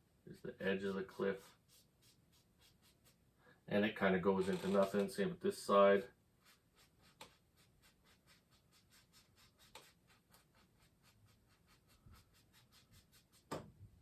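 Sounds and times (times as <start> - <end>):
paintbrush strokes on canvas: 0.3 - 3.2, 5.6 - 13.5.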